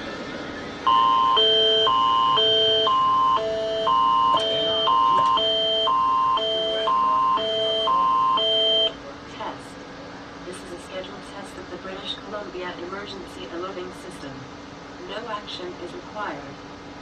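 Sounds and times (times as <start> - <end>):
alternating high tone chords: 0.9 - 8.9.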